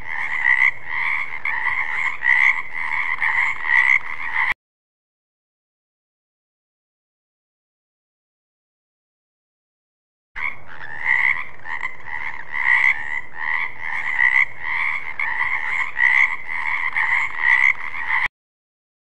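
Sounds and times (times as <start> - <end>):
frogs croaking: 0.0 - 4.6, 10.4 - 18.3.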